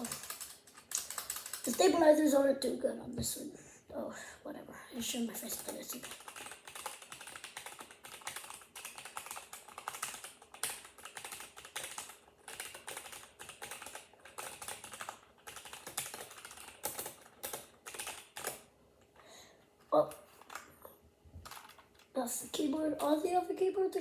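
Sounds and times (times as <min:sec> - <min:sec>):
mechanical keyboard typing: 0:00.0 - 0:02.2, 0:05.4 - 0:18.7, 0:20.1 - 0:20.7, 0:21.4 - 0:23.4.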